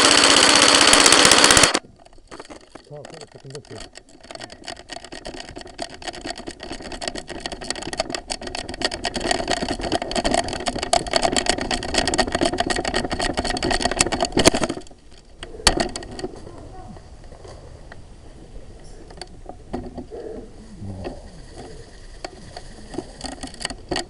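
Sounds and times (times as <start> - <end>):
motor whir: 0.0 - 1.8
airsoft rifle rapid clicking: 0.0 - 16.3, 21.5 - 24.0
sharp clicks: 0.0 - 16.4.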